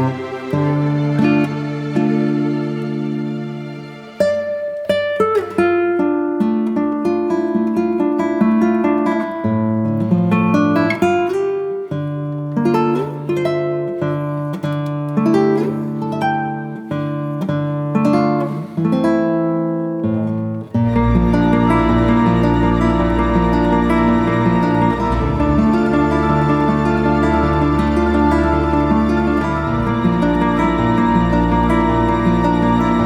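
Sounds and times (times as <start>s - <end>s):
acoustic guitar melody: 0.0s - 33.0s.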